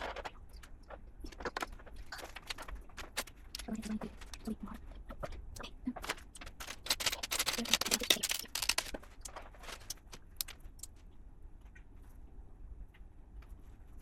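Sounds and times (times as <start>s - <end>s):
plastic pieces clicking and clattering: 0.0s - 4.5s, 5.1s - 11.0s.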